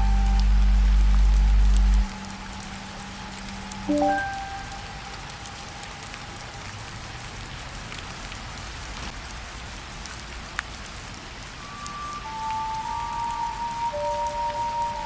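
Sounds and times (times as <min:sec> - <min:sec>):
held music note: 0:00.0 - 0:02.2
rain falling: 0:00.0 - 0:15.0
water drip: 0:00.0 - 0:15.0.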